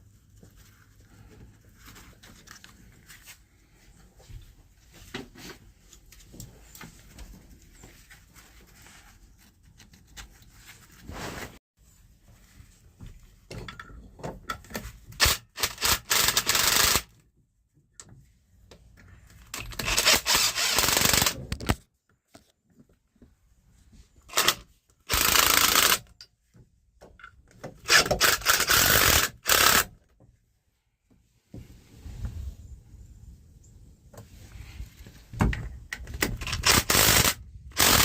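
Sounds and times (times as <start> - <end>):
small clicks and knocks: 25.7 - 28.9.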